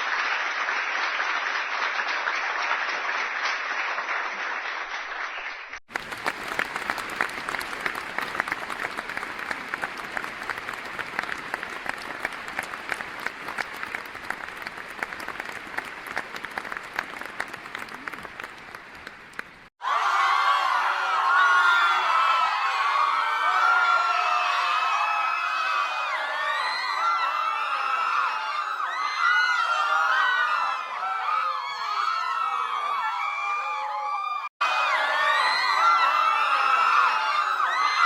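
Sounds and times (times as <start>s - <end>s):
thin clapping: 0.0s - 19.7s
applause of many hands: 0.0s - 38.0s
crowd cheering and whooping: 19.8s - 38.0s.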